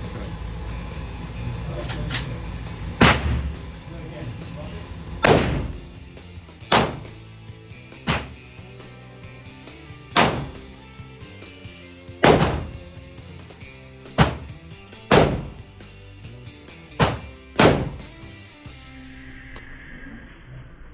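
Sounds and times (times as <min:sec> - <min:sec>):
background music: 0:00.0 - 0:19.6
pistol shots: 0:03.0 - 0:03.6, 0:05.2 - 0:06.0, 0:06.7 - 0:07.2, 0:08.1 - 0:08.4, 0:10.2 - 0:10.7, 0:12.2 - 0:12.8, 0:14.2 - 0:15.7, 0:17.0 - 0:18.2.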